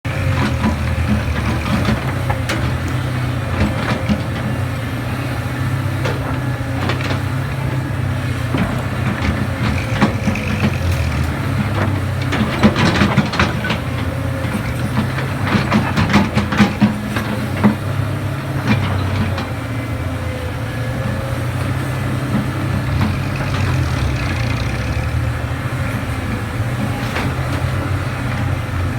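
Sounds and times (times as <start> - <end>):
diesel engine running: 0.0 - 28.9
clattering knocks: 0.4 - 19.6.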